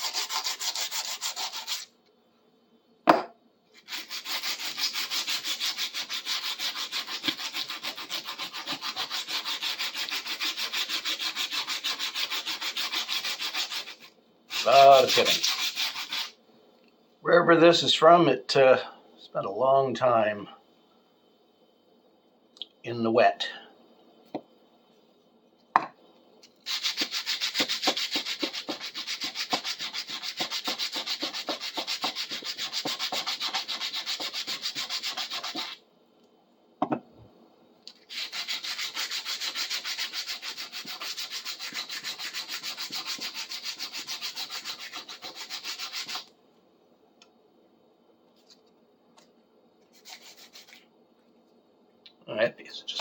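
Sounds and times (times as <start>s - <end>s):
sandpaper rubbing on metal: 0.0s - 1.9s, 3.8s - 16.4s, 26.7s - 35.8s, 38.1s - 46.3s, 49.9s - 50.8s
knock: 3.1s - 3.3s, 36.8s - 37.0s.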